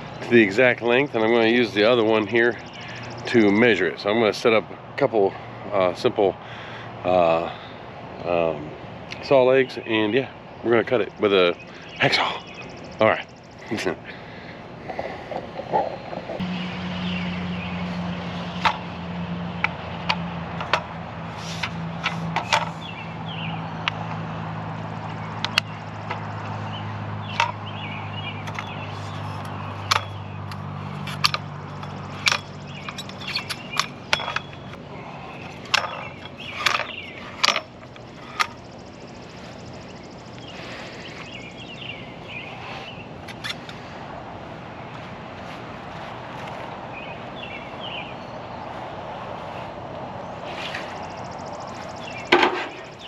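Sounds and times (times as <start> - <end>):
low engine hum: 0.0 - 53.0
metal knocks and clatter: 52.3 - 52.9.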